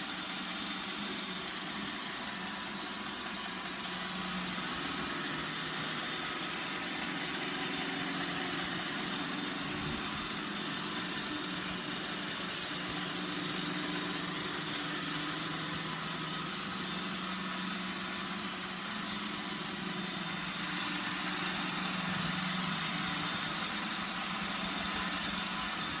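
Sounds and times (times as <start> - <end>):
robot vacuum running: 0.0 - 26.0.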